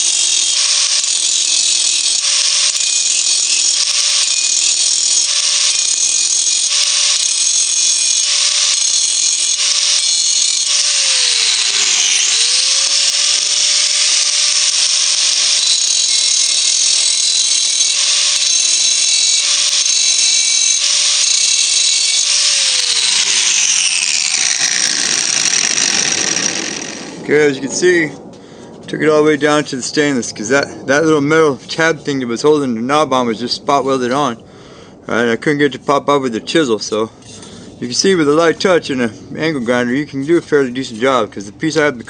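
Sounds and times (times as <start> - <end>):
angle grinder grinding metal: 0.0 - 27.3.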